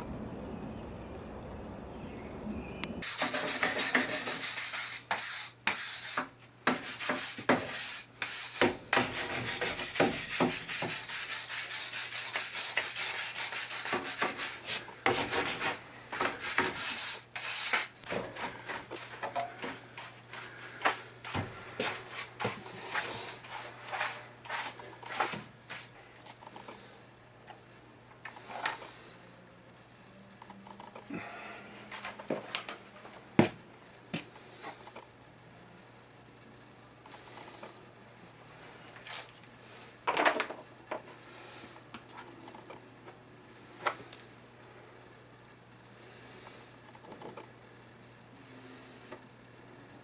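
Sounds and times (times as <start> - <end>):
faint low hum: 0.0 - 3.0.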